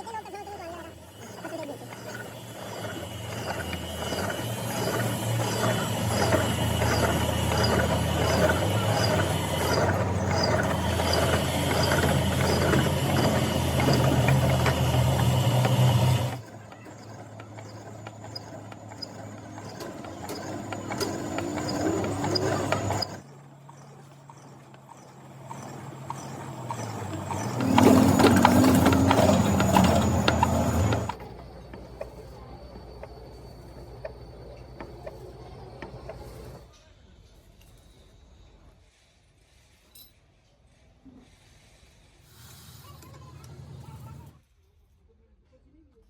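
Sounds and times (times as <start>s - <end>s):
workshop machine motor humming: 0.0s - 36.7s
regular clicking: 1.9s - 31.2s.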